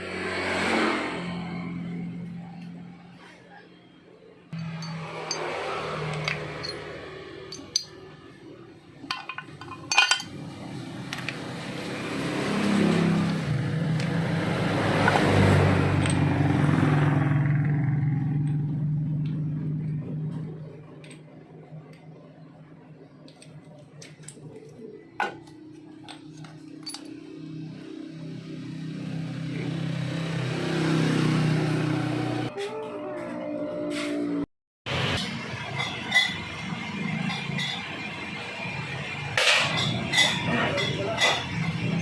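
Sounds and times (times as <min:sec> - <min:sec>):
metal tools clinking: 0:04.6 - 0:08.2, 0:09.0 - 0:10.4, 0:23.3 - 0:27.4.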